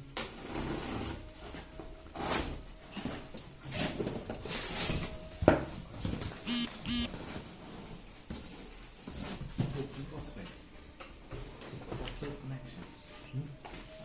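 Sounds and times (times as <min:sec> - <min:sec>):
cardboard rustling and scraping: 0:00.3 - 0:06.4, 0:07.1 - 0:10.1.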